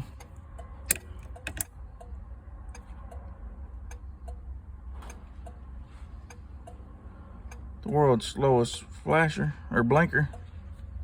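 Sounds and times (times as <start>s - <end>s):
turn signal flasher clicking: 0.0s - 5.6s, 6.2s - 8.0s.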